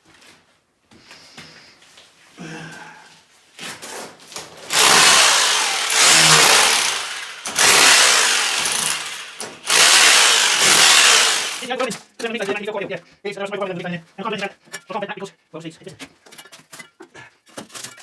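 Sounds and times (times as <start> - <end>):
power tool bursts: 4.7 - 11.8.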